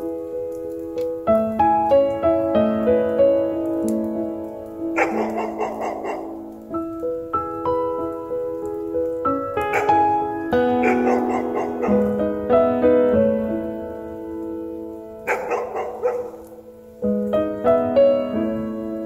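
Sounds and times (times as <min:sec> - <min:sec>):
piano background music: 0:00.0 - 0:19.0.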